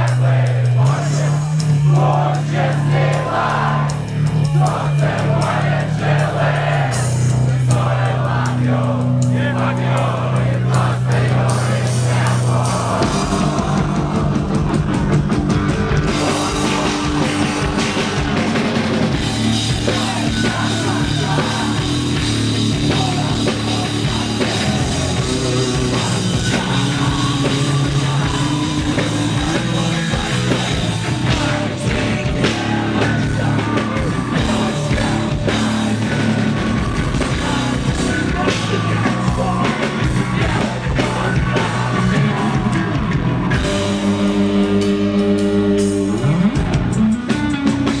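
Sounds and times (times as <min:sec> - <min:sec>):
rock band playing live: 0:00.0 - 0:48.0
person singing: 0:07.7 - 0:15.1, 0:16.1 - 0:46.4.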